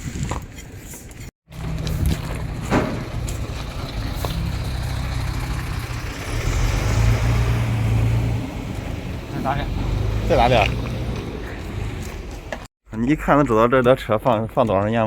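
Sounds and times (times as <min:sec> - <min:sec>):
diesel truck engine idling: 0:01.5 - 0:12.6.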